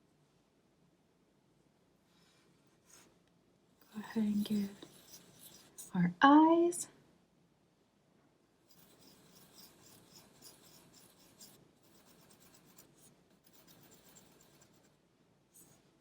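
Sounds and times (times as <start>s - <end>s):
pencil scratching on paper: 3.8s - 6.0s, 8.7s - 15.9s.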